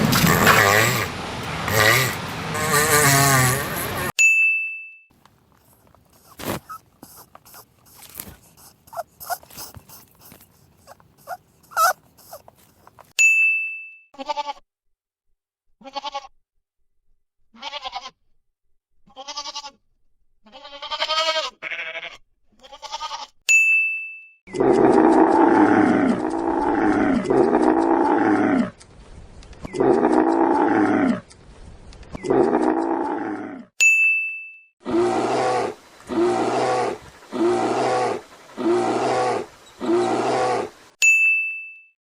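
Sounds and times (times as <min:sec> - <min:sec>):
short squeaky calls: 0:05.6 - 0:13.2
animal bleating: 0:06.2 - 0:13.1, 0:14.2 - 0:14.6, 0:15.8 - 0:16.4, 0:17.6 - 0:18.2, 0:19.1 - 0:19.8, 0:20.4 - 0:23.4.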